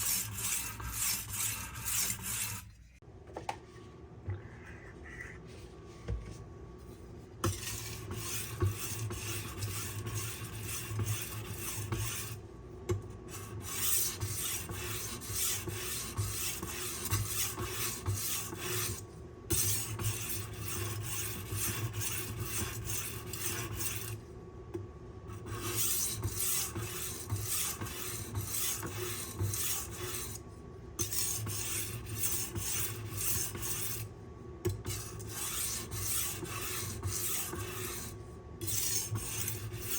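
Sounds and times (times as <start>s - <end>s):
knife rasping on sharpening stone: 0.0s - 2.7s, 31.0s - 34.0s, 34.8s - 39.9s.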